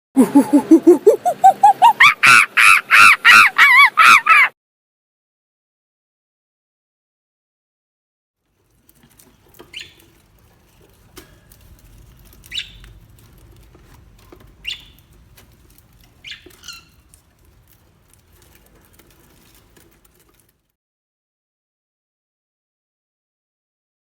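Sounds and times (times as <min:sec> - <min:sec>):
light pattering and scuffling: 0:08.5 - 0:20.7
small animal squeaking: 0:09.5 - 0:10.2, 0:12.2 - 0:13.7, 0:14.4 - 0:17.8.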